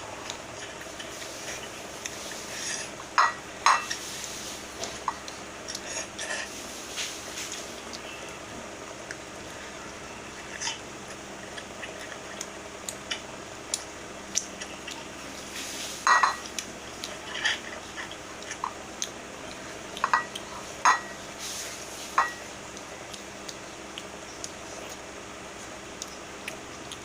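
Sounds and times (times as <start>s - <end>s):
steady low hum: 0.0s - 27.0s
wet chewing: 0.0s - 27.0s
dishes clinking: 3.2s - 4.0s, 16.0s - 16.5s, 20.0s - 21.2s, 22.2s - 22.5s.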